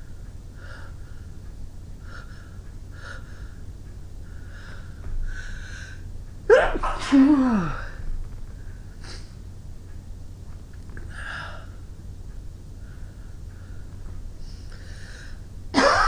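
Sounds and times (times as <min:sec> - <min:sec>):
woman sneezing: 0:06.5 - 0:07.9, 0:15.8 - 0:16.0
sniff: 0:09.0 - 0:09.3.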